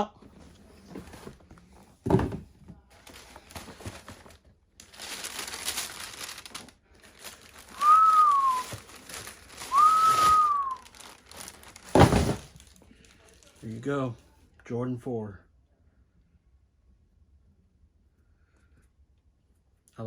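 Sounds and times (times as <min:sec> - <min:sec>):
paper crinkling: 0:03.0 - 0:13.6
whistled notes: 0:07.8 - 0:08.8, 0:09.7 - 0:10.9.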